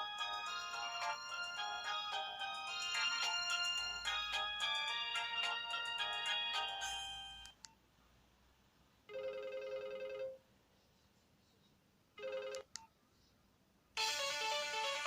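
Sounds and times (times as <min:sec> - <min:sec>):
melodic phone ringtone: 0:00.0 - 0:07.5, 0:09.1 - 0:10.4, 0:12.2 - 0:12.6.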